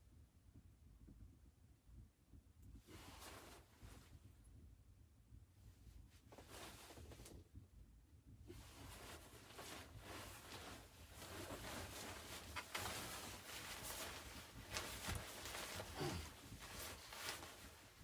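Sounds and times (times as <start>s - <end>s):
faint rustling and scraping: 2.8s - 4.3s, 5.7s - 7.5s, 8.5s - 18.0s.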